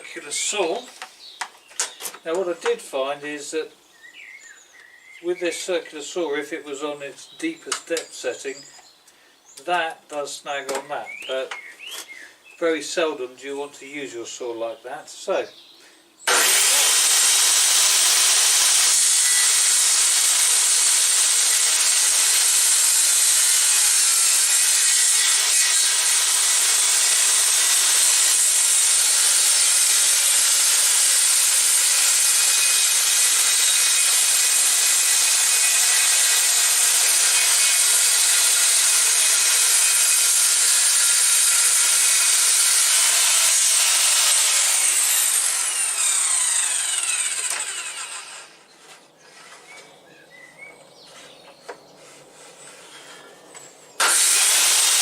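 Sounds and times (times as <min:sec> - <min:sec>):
circular saw cutting wood: 0:16.3 - 0:48.7, 0:54.0 - 0:55.0.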